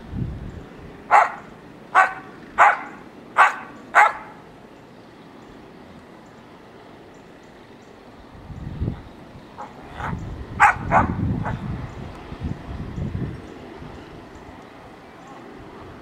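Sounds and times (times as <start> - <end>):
dog barking: 1.1 - 4.4, 9.6 - 11.6.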